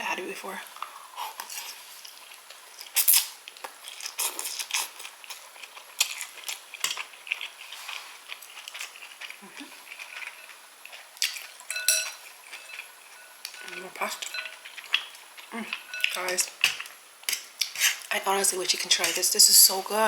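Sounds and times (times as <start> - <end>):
cutlery clinking on a plate: 11.3 - 14.7, 15.8 - 16.2.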